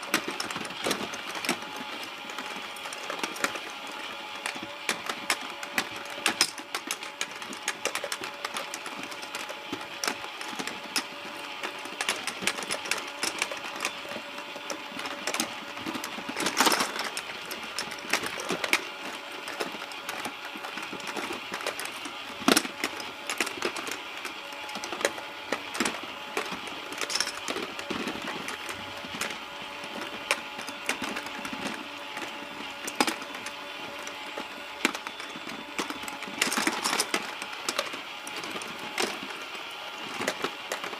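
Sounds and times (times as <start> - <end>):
plastic clicking: 0.0 - 40.9
small motor whirring: 0.0 - 40.9.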